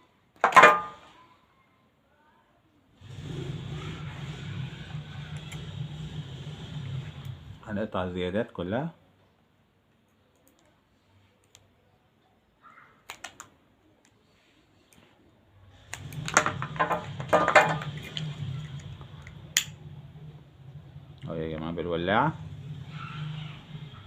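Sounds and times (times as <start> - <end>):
tools clicking and rattling: 16.1 - 19.7.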